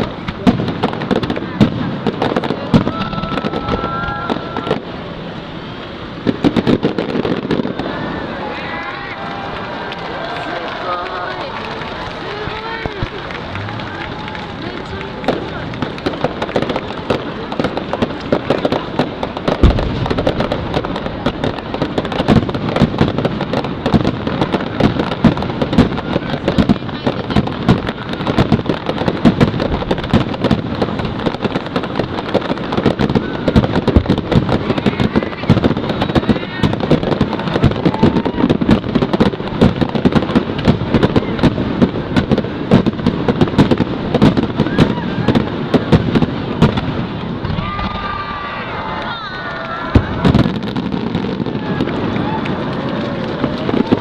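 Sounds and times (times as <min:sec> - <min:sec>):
fireworks bursting and crackling: 0:00.0 - 0:54.0
heavy firework boom: 0:12.6 - 0:48.1, 0:49.9 - 0:54.0.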